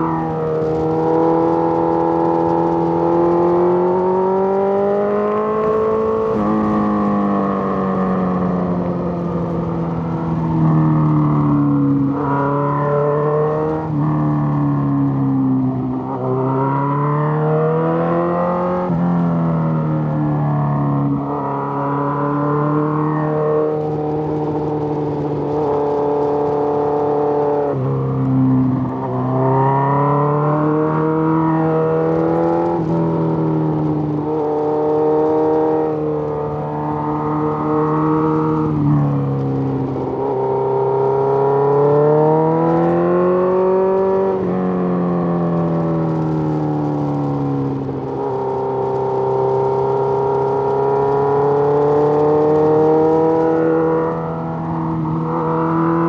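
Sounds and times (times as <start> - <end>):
motorcycle engine running: 0.1 - 12.8, 20.0 - 31.4.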